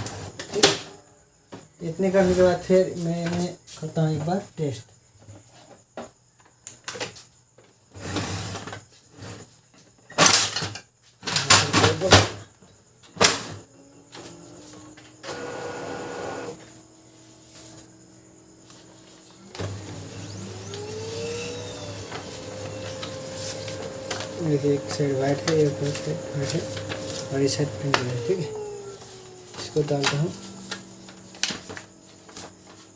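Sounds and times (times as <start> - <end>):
printer motor whirring: 14.2 - 16.7, 19.0 - 32.9
motor winding up to a hum: 19.4 - 32.4.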